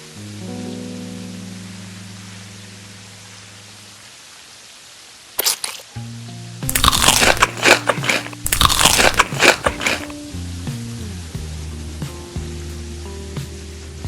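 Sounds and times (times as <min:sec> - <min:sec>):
soft background music: 0:00.0 - 0:04.1
crunching of crispy food chewed: 0:05.4 - 0:05.9, 0:06.7 - 0:10.2.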